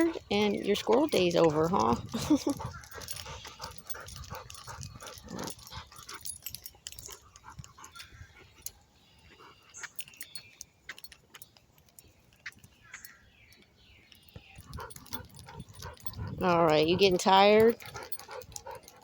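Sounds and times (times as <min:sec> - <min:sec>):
dog panting: 0:00.0 - 0:10.3, 0:14.6 - 0:19.0.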